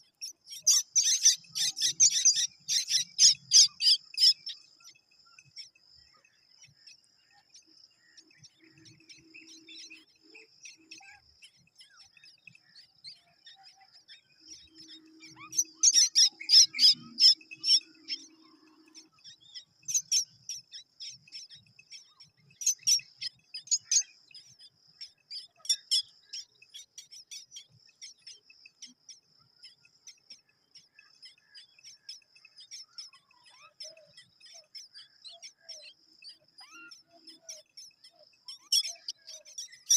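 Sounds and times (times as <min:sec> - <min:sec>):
mynas chirping: 0:00.0 - 0:04.6, 0:12.9 - 0:29.0.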